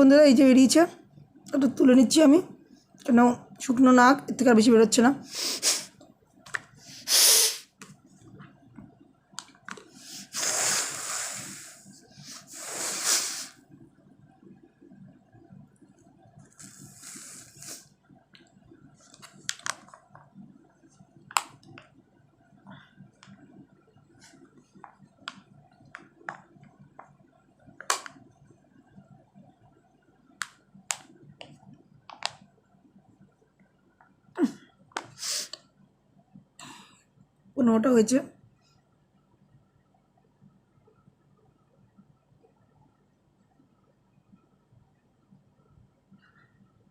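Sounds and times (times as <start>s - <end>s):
person blowing nose: 5.4s - 5.9s, 6.9s - 7.7s, 10.1s - 13.6s.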